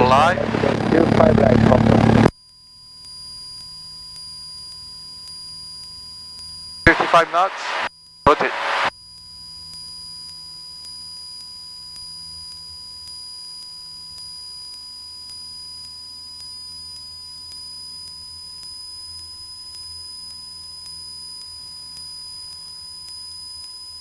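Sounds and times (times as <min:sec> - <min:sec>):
faint low engine drone: 0:00.0 - 0:02.3.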